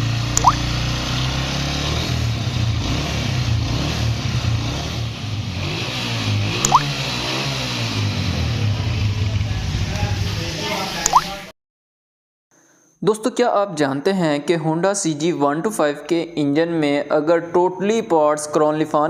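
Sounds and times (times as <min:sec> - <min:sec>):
motorcycle engine running: 0:00.0 - 0:10.7.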